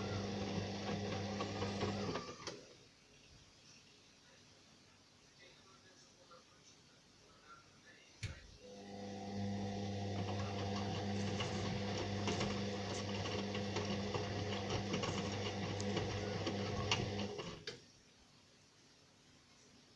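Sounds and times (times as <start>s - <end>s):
washing machine motor humming: 0.0s - 2.6s, 8.2s - 17.8s.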